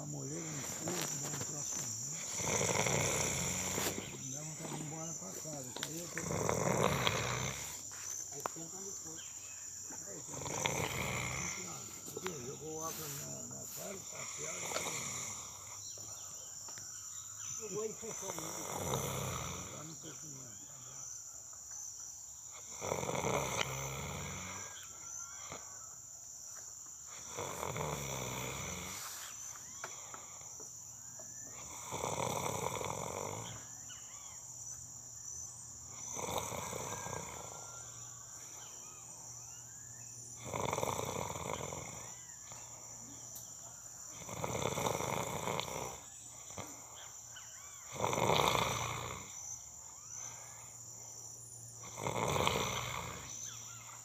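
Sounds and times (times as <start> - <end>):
person snoring: 0.0 - 5.2, 6.0 - 7.9, 10.2 - 15.9, 18.0 - 20.0, 22.5 - 25.8, 27.1 - 29.3, 31.5 - 33.7, 35.9 - 38.6, 40.4 - 42.8, 44.1 - 46.9, 47.9 - 49.5, 51.8 - 54.0
crickets chirring: 0.0 - 54.0.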